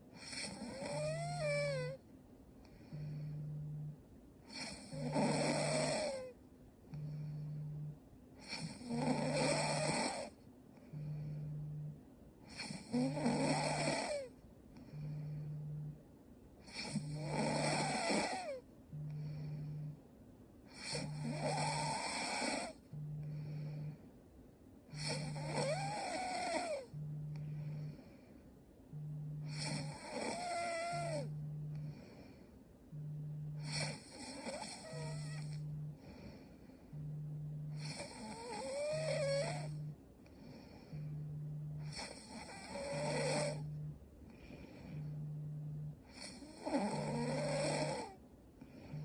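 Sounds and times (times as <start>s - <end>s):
woman snoring: 0.1s - 2.0s, 2.6s - 16.0s, 16.6s - 20.0s, 20.6s - 24.1s, 24.8s - 49.0s
short low hum: 1.5s - 4.4s, 6.4s - 8.4s, 10.5s - 12.3s, 14.6s - 16.6s, 18.7s - 21.4s, 22.8s - 25.4s, 26.8s - 30.0s, 30.8s - 37.8s, 39.5s - 41.9s, 43.5s - 46.1s.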